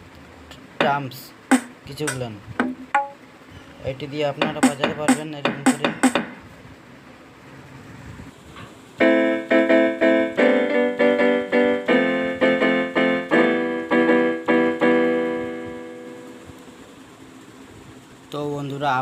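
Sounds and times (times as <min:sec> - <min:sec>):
electronic keyboard notes and chords: 0:00.8 - 0:03.2, 0:04.4 - 0:06.2, 0:09.0 - 0:16.9.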